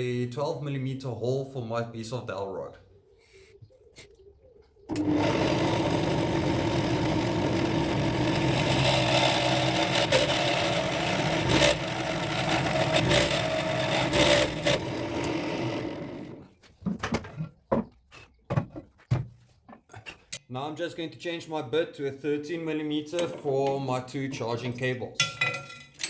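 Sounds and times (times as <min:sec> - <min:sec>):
electric drill boring wood: 0:04.9 - 0:16.5.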